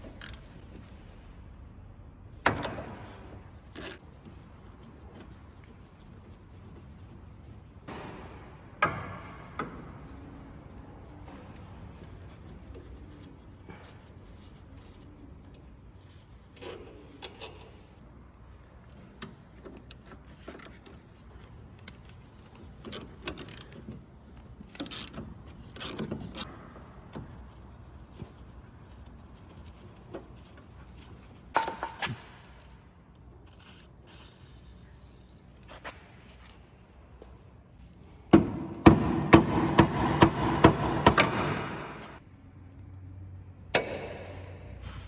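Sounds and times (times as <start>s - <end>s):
sharp knocks: 38.3s - 42.2s.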